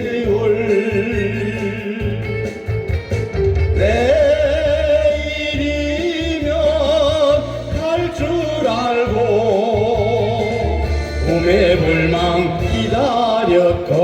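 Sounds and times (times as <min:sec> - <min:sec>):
person singing with vibrato: 0:00.0 - 0:02.9, 0:03.7 - 0:14.0
steady bass beat: 0:00.0 - 0:14.0.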